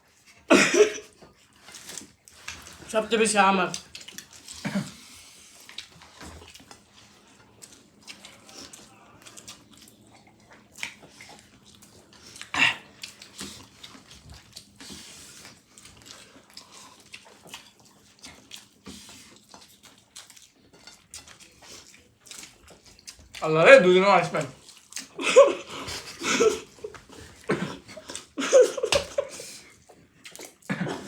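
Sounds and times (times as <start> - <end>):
people chewing: 0.0 - 31.0.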